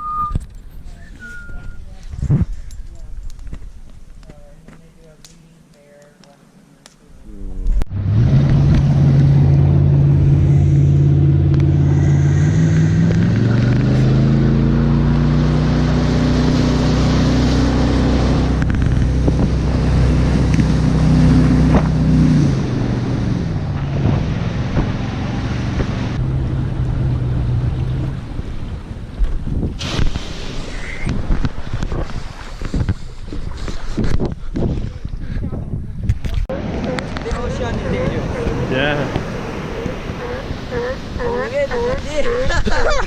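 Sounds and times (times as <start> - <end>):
wind noise on microphone: 0.0 - 4.2, 18.0 - 43.0
engine running: 7.8 - 29.4.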